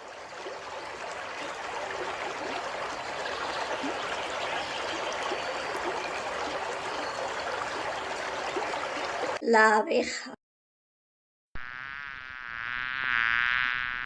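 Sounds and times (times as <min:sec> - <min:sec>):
river water flowing over stones: 0:00.0 - 0:09.4.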